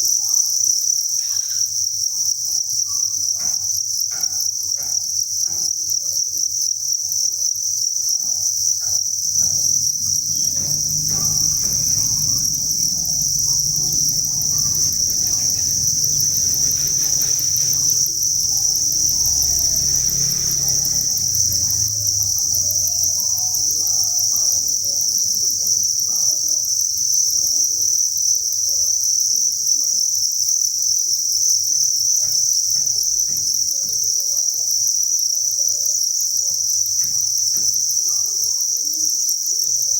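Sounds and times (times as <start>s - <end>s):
crickets chirping: 0.0s - 39.9s
low rumble: 9.3s - 24.2s.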